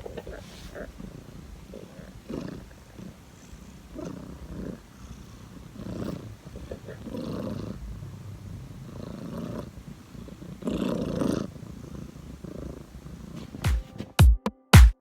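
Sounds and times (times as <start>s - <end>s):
kitten snoring: 0.0s - 13.8s
music beat: 13.6s - 15.0s.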